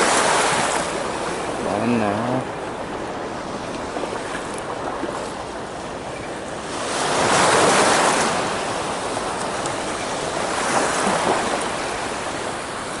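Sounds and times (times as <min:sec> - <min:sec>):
waves washing onto shore: 0:00.0 - 0:13.0
wind buffeting microphone: 0:00.0 - 0:13.0.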